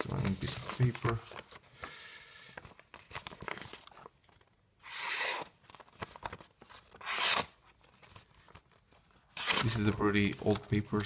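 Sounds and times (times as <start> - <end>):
knife cutting paper: 6.9 - 7.6.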